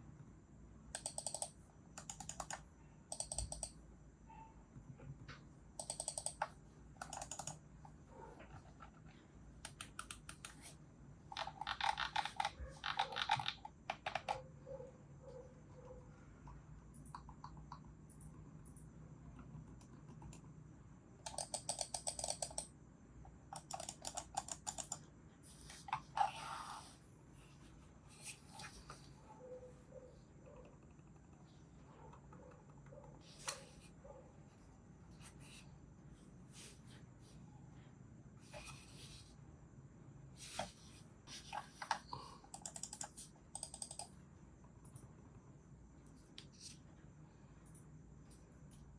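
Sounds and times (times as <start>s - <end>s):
mouse buttons clicking rapidly: 0.9s - 3.8s, 5.8s - 7.9s, 9.6s - 14.5s, 16.4s - 20.6s, 21.2s - 25.1s, 41.7s - 45.1s.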